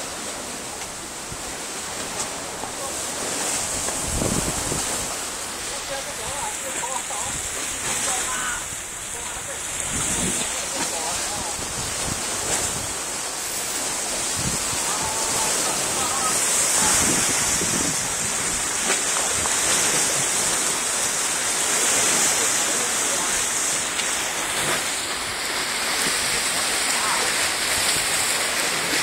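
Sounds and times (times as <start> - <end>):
sea surf rushing: 0.0 - 29.0
wind: 0.0 - 29.0
faint voices: 13.7 - 18.0.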